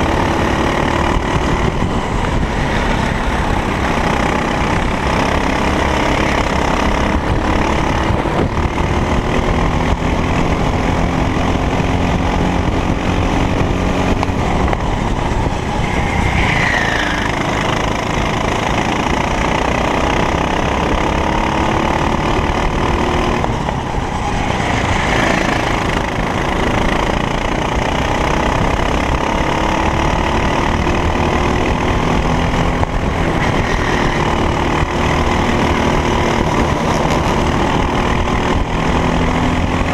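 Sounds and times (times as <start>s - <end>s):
racing kart engine accelerating: 0.0s - 39.9s
wind noise: 0.0s - 39.9s
high squeal: 14.9s - 17.9s.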